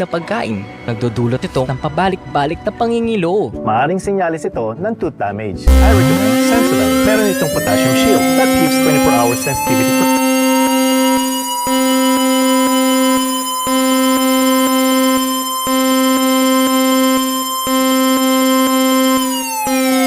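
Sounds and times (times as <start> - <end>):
electronic emergency alert tone: 5.7 - 20.0.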